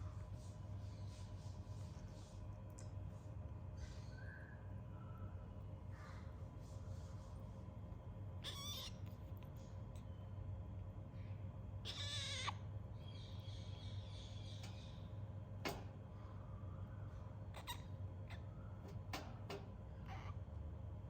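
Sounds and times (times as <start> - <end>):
low steady hum: 0.0 - 21.0
cockatoo chick calling: 8.4 - 9.1, 11.8 - 15.0, 17.5 - 18.6.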